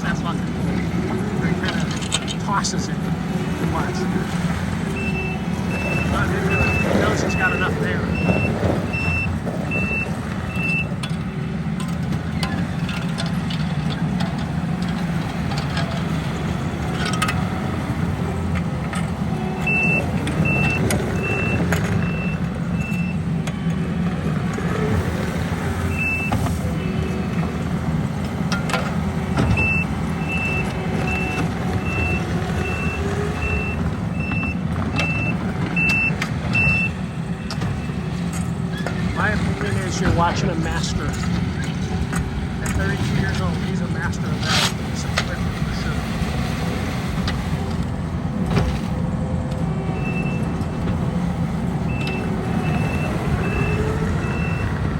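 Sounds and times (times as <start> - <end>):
heavy machine engine running: 0.0 - 54.9
reversing alarm beeping: 4.9 - 11.1, 19.3 - 24.2, 25.8 - 27.2, 29.4 - 42.1, 49.9 - 50.7, 51.8 - 54.9.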